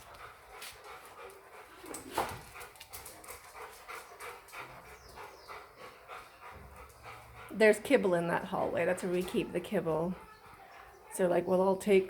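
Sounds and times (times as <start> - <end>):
dogs panting: 0.0 - 12.0.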